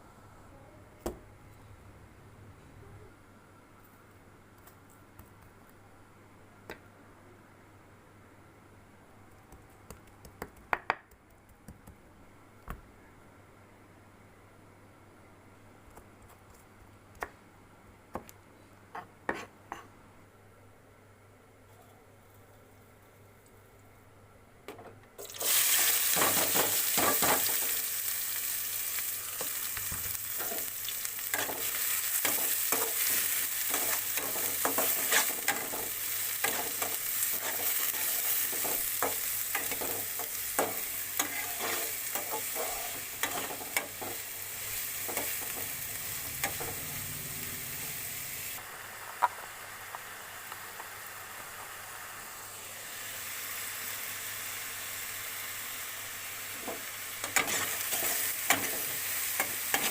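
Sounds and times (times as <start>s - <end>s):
spoon scraping against pan: 19.0s - 19.9s, 31.3s - 44.2s, 56.6s - 59.9s
food sizzling in hot oil: 25.2s - 59.9s.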